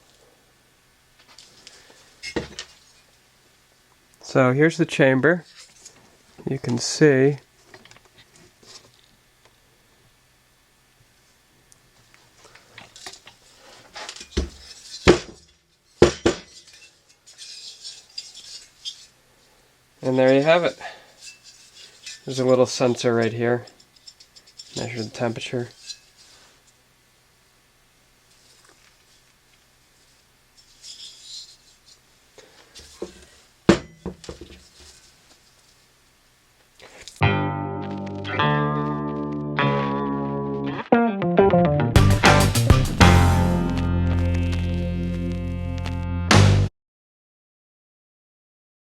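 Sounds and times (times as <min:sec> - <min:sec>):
rustle: 0:01.1 - 0:03.2, 0:12.0 - 0:26.8, 0:28.2 - 0:37.2.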